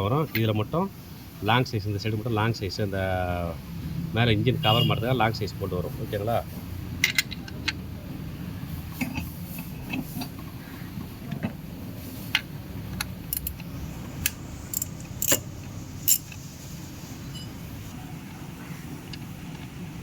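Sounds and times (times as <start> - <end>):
metal tools clinking: 14.7 - 16.4.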